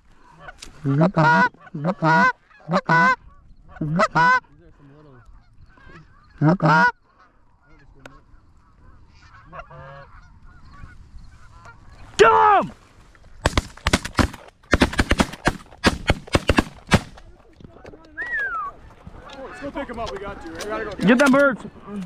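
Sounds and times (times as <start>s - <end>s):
goose honking: 0.2s - 12.1s.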